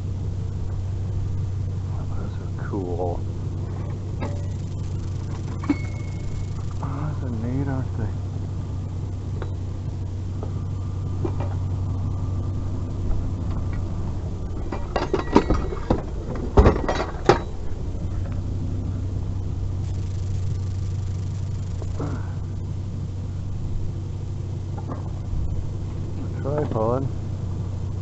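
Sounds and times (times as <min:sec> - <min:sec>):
vehicle engine idling: 0:00.0 - 0:28.0
knocks and rattles: 0:14.6 - 0:17.6.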